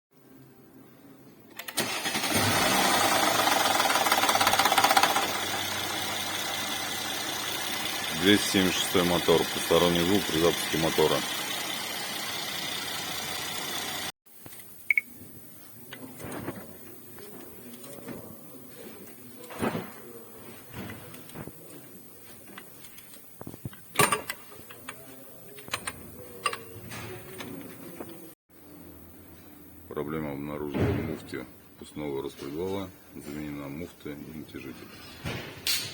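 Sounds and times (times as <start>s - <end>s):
car engine cranking and idling: 1.8s - 14.1s
engine rattle: 1.8s - 14.1s.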